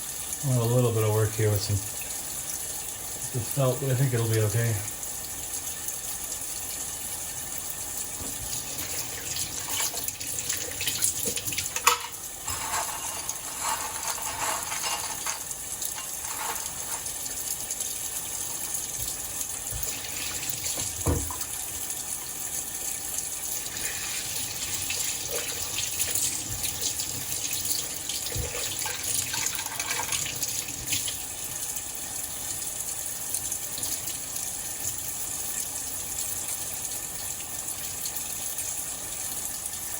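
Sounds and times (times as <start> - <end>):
tap water running into sink: 0.0 - 39.9
scrubbing metal parts: 11.5 - 17.3.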